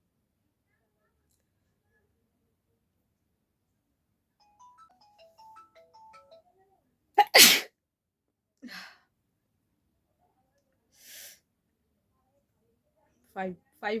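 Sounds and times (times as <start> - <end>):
soft tinkling notes: 4.4 - 6.5
person sneezing: 7.2 - 7.7.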